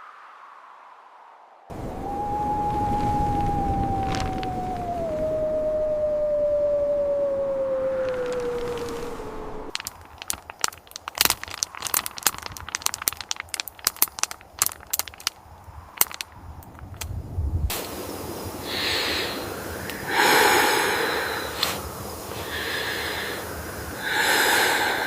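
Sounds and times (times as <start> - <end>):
rushing noise with breathy swells: 7.1 - 9.7, 17.1 - 25.0
wood fire crackling and popping: 7.6 - 20.3.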